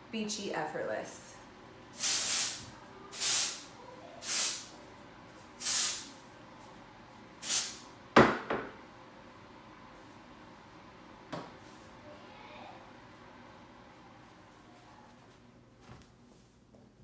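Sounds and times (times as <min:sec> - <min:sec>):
aerosol spray hissing: 0:02.0 - 0:04.7, 0:05.6 - 0:06.1, 0:07.4 - 0:07.8.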